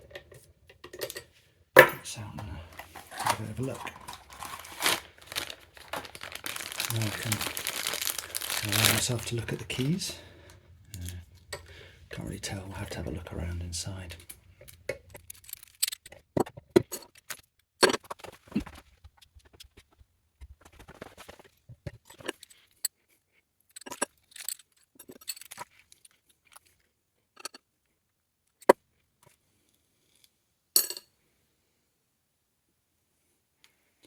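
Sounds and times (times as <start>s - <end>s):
padlock parts clicking and rattling: 14.6s - 16.2s, 23.7s - 26.8s.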